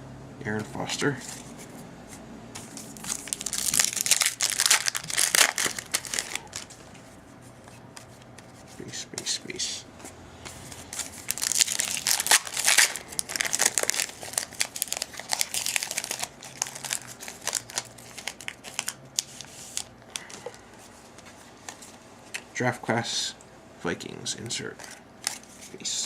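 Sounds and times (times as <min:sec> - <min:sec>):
cards being handled: 0:00.6 - 0:09.4, 0:10.0 - 0:22.5, 0:24.7 - 0:25.9
wrapper tearing and crinkling: 0:02.7 - 0:06.7, 0:10.9 - 0:20.3, 0:24.8 - 0:25.7.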